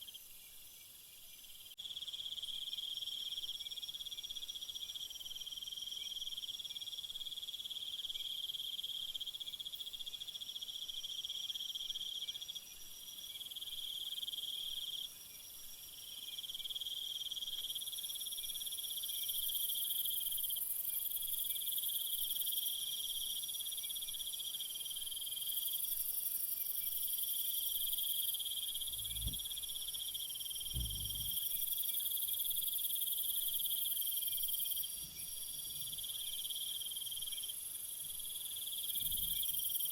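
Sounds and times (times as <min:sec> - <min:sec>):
high-pitched insect trilling: 0:25.2 - 0:39.9
crickets and insects trilling: 0:25.4 - 0:39.9
soft low thumps: 0:28.9 - 0:29.5, 0:30.6 - 0:31.4.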